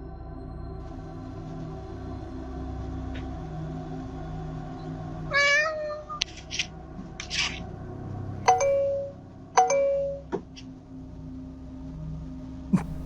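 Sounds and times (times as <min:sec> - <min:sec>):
pitch-bending call: 0:08.5 - 0:08.9
doorbell chiming: 0:08.5 - 0:10.3.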